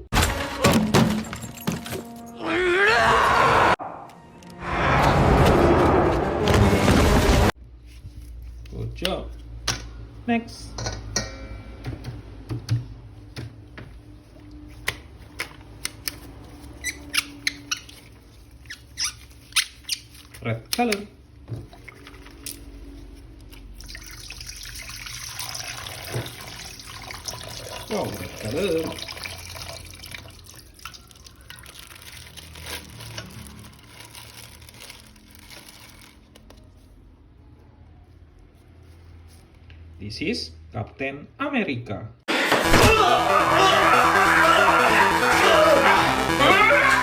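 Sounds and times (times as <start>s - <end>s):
plastic squeaks: 16.5s - 20.4s
water dripping and splashing: 21.5s - 22.8s, 23.4s - 32.6s
plastic toy crinkling and rubbing: 31.6s - 36.9s.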